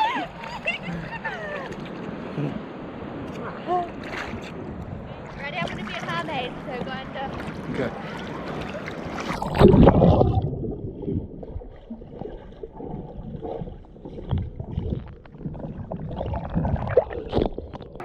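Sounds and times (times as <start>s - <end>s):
muffled underwater rumbling: 4.6s - 18.0s
loud seawater splash: 5.3s - 11.2s.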